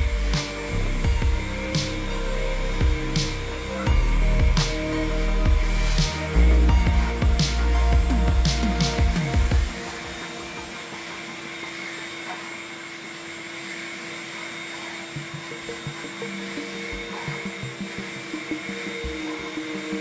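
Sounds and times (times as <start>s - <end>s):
vacuum cleaner running: 6.0s - 20.0s.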